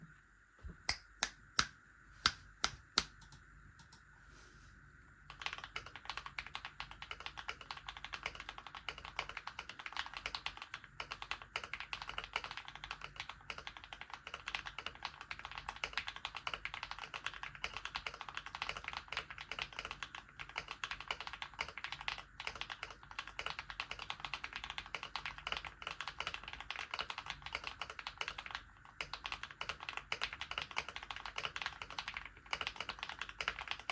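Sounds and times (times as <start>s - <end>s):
mechanical keyboard typing: 5.3s - 33.9s.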